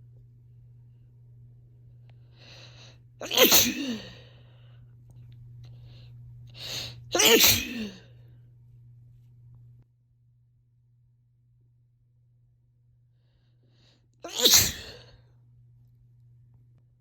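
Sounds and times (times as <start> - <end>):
person sneezing: 3.2 - 4.3, 6.6 - 8.1, 14.3 - 15.2.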